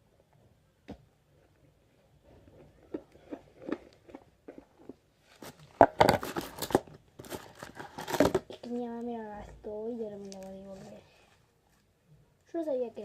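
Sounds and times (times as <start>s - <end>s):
crinkling and crackling handling: 2.2s - 11.9s.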